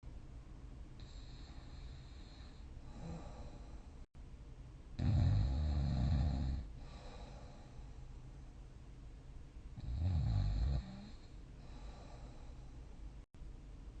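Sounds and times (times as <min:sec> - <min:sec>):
quiet breathing: 0:01.0 - 0:04.1, 0:05.0 - 0:08.6, 0:09.7 - 0:13.3
person snoring: 0:05.0 - 0:07.0, 0:09.8 - 0:12.3.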